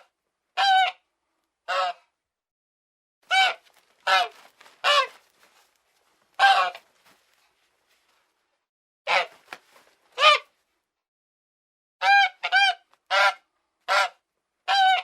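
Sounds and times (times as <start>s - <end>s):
geese honking: 3.3s - 5.3s, 6.4s - 6.8s, 12.0s - 15.0s.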